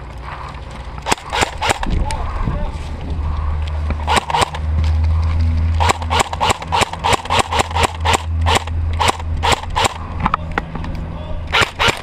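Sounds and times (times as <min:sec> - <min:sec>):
steady low hum: 0:00.0 - 0:12.0
airsoft gun shots: 0:01.0 - 0:01.9, 0:04.1 - 0:04.6, 0:05.8 - 0:10.0, 0:11.5 - 0:12.0.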